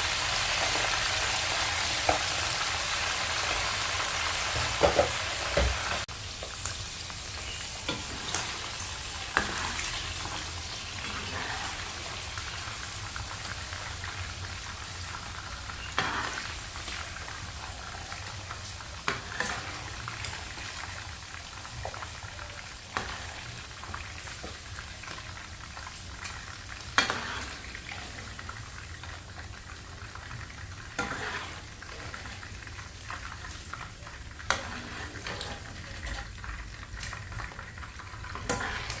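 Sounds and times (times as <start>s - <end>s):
food sizzling in oil: 0.0s - 39.0s
spatula scraping a pan: 7.5s - 12.0s, 15.8s - 16.6s, 19.1s - 20.5s, 27.0s - 27.7s, 31.0s - 32.4s, 34.4s - 36.2s, 38.3s - 39.0s.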